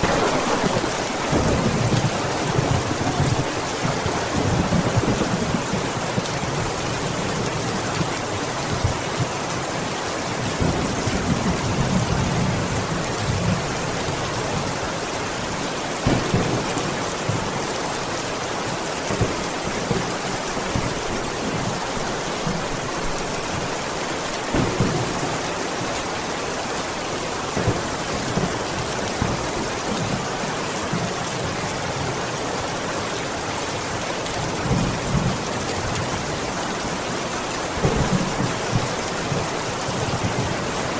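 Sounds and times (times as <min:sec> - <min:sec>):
low thunder rumbles: 0:00.0 - 0:09.3, 0:16.0 - 0:26.4
heavy rain on a window: 0:00.0 - 0:40.9.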